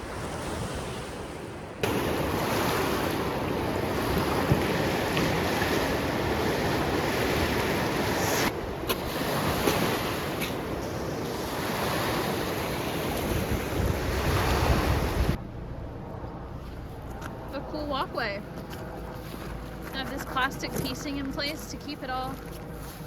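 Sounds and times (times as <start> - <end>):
river rushing: 0.0 - 15.4
wind buffeting microphone: 0.0 - 15.4.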